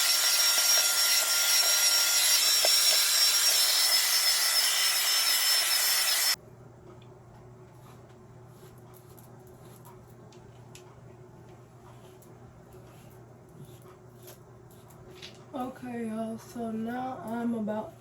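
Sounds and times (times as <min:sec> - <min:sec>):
hair dryer running with high whine: 0:00.0 - 0:06.4.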